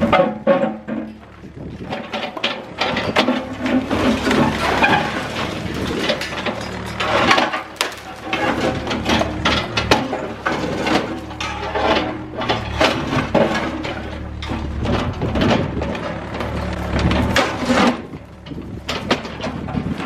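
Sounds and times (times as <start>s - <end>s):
concrete crunching and scraping: 0.0s - 20.0s
excavator diesel engine running: 0.0s - 20.0s
falling concrete chunks knocking: 0.0s - 20.0s.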